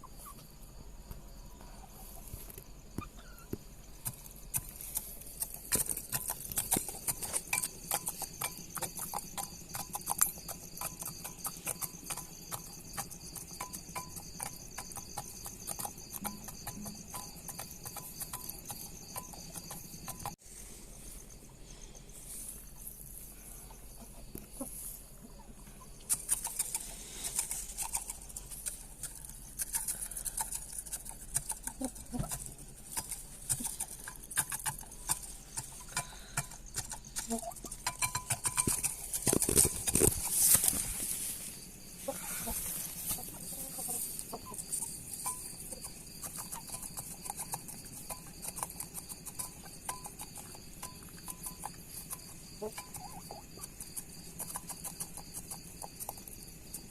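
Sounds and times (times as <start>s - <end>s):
birds clucking and chirping: 1.6s - 56.3s.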